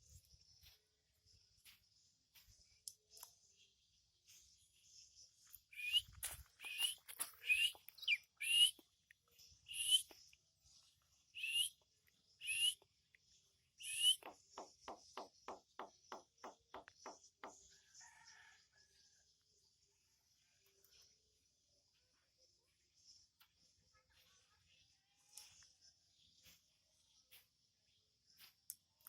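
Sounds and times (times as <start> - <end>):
bird harsh hissy calls: 6.6 - 7.8, 8.4 - 8.7, 9.7 - 10.0, 11.4 - 11.7, 12.4 - 12.8, 13.8 - 14.2.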